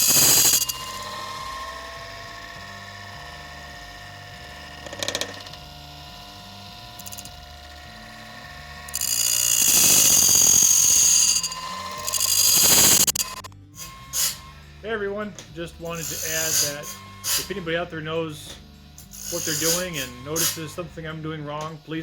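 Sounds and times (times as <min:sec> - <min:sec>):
mechanism clatter: 0:00.0 - 0:02.6, 0:06.9 - 0:07.5, 0:08.9 - 0:13.5
hissing grind of grinding wheel: 0:00.0 - 0:22.0
motor humming: 0:00.0 - 0:22.0.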